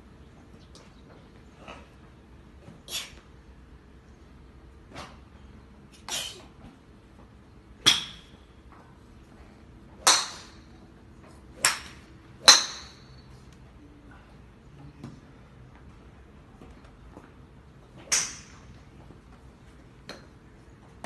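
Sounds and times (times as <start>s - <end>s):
person sneezing: 2.9s - 3.2s, 6.1s - 6.5s.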